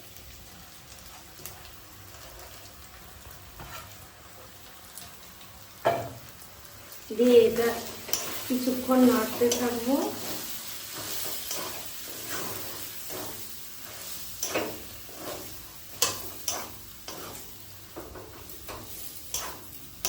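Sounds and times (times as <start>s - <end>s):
faint sizzle: 0.0s - 20.0s
spoon scraping a pan: 3.6s - 4.0s, 7.8s - 19.8s.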